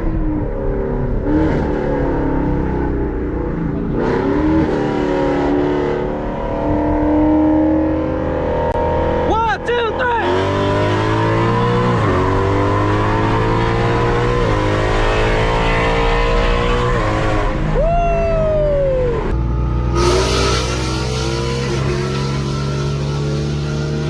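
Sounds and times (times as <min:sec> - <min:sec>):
car engine accelerating through gears: 0:00.0 - 0:09.4, 0:10.2 - 0:24.0.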